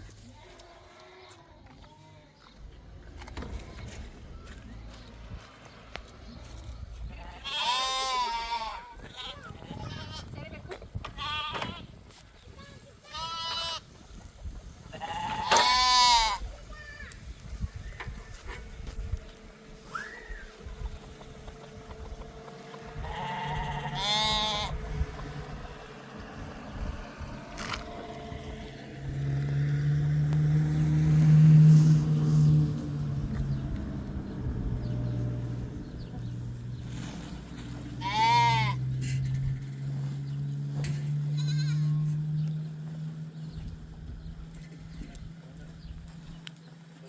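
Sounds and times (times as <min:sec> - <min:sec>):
animal bleating: 0:07.1 - 0:11.9, 0:13.0 - 0:13.9, 0:14.9 - 0:16.4, 0:23.0 - 0:25.3, 0:37.9 - 0:39.4, 0:41.0 - 0:42.3
low rumble: 0:17.1 - 0:46.1.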